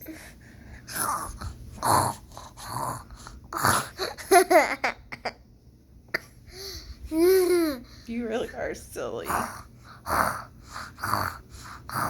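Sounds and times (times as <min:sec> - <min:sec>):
child fake snoring: 0:00.9 - 0:04.3, 0:09.3 - 0:12.0.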